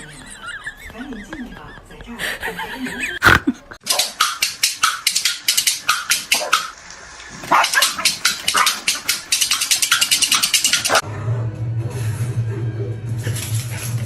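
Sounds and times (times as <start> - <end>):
fast sharp clicks: 3.8 - 6.8, 7.5 - 11.0.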